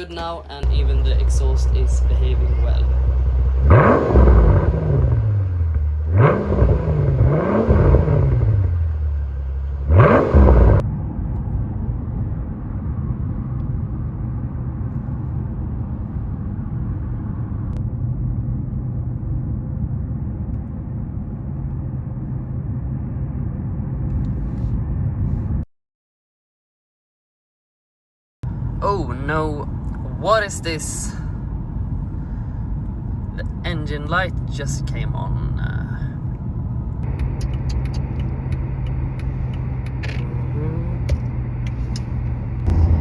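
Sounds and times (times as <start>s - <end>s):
car engine revving: 0.0s - 24.7s, 28.5s - 43.0s.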